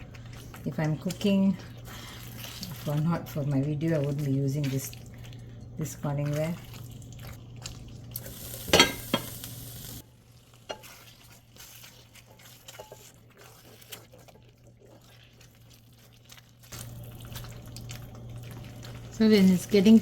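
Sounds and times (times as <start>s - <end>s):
spoon stirring and scraping pot: 0.0s - 9.6s, 10.4s - 20.0s
gravy simmering pops: 0.0s - 20.0s.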